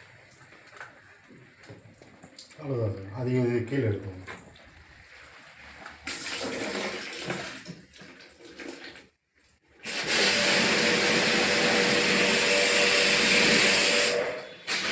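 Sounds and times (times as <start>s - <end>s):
water splashing: 0.0s - 9.6s
pump motor hum: 9.8s - 14.9s
pressure washer spray hiss: 9.9s - 14.9s.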